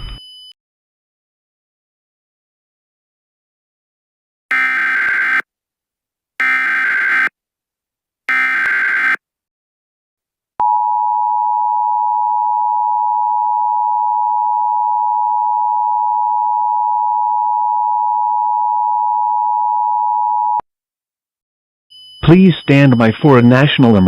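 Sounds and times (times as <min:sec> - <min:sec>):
screech of digital data tones: 0:21.9 - 0:24.0
two-tone alert signal: 0:21.9 - 0:24.0.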